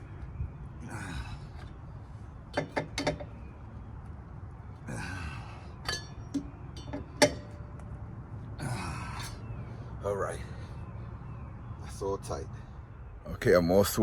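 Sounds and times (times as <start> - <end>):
lug wrench clinking on nuts: 2.5 - 3.4, 5.8 - 7.6.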